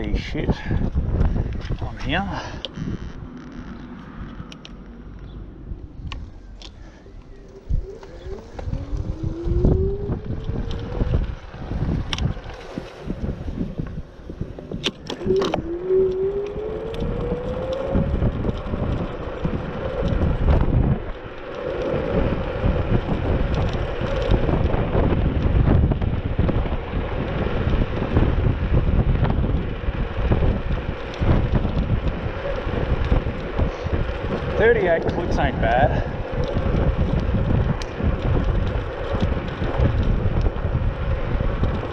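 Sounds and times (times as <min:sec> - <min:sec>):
wind rumbling on microphone: 0:00.0 - 0:41.9
electric scooter motor whining: 0:00.8 - 0:41.9
sharp clicks: 0:02.6 - 0:05.4.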